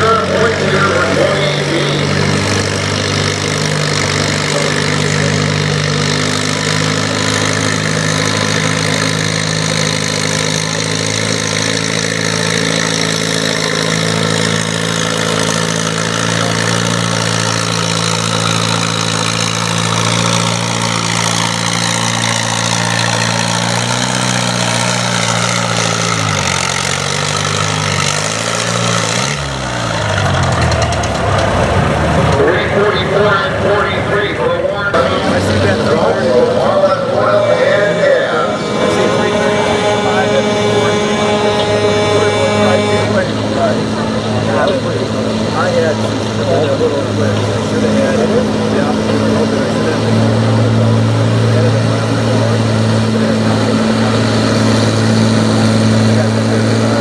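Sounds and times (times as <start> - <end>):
tractor diesel engine running: 0.0 - 57.0.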